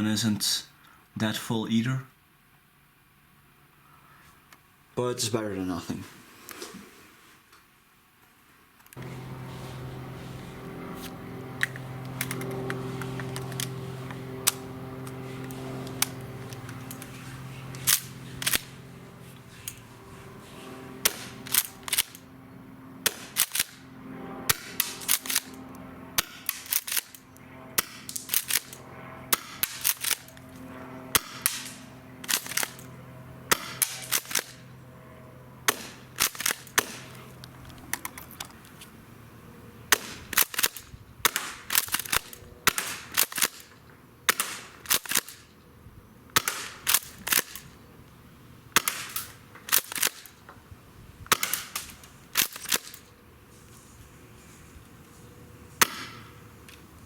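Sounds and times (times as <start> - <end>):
faint steady hum: 0.0 - 57.0
shotgun pump clacks: 14.4 - 18.7, 21.0 - 22.2, 24.8 - 25.5, 26.4 - 27.2, 27.8 - 28.8, 29.4 - 30.3, 31.2 - 32.9, 33.5 - 34.6, 35.7 - 37.0, 40.0 - 43.7, 44.4 - 45.4, 48.8 - 50.3, 51.3 - 53.0
airsoft shotgun pops: 51.3 - 51.8, 55.8 - 56.2.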